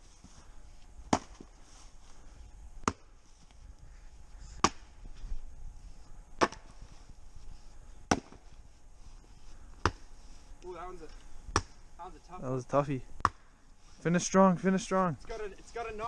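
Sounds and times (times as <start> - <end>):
maul chopping firewood: 1.0 - 1.6, 2.8 - 3.2, 4.6 - 5.0, 6.4 - 6.8, 8.1 - 8.5, 9.8 - 10.1, 11.5 - 11.9, 13.2 - 13.5.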